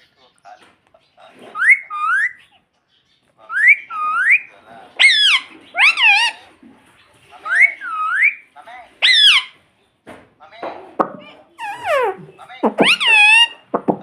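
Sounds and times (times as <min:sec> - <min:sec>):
parrot loud falling calls: 0:05.0 - 0:06.4, 0:09.0 - 0:09.6, 0:11.6 - 0:13.7
parrot rising whistle: 0:11.6 - 0:13.6.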